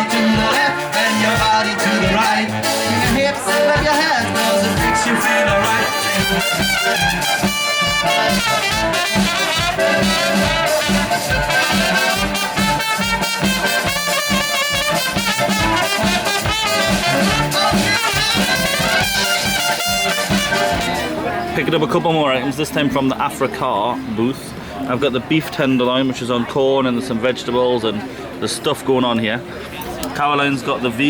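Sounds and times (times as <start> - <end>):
upbeat brass band music: 0.0 - 21.6.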